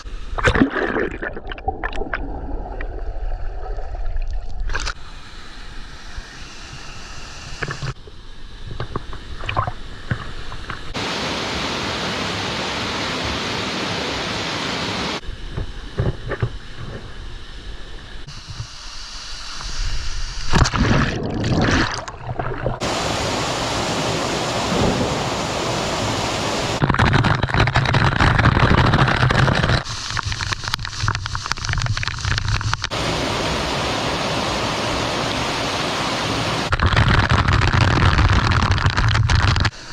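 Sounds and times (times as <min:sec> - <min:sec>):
waterfall rushing: 0:10.9 - 0:15.2, 0:22.8 - 0:26.8, 0:32.9 - 0:36.7.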